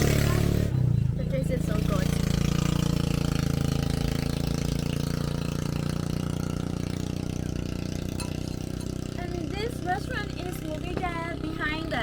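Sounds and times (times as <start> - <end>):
engine running steadily: 0.0 - 12.0.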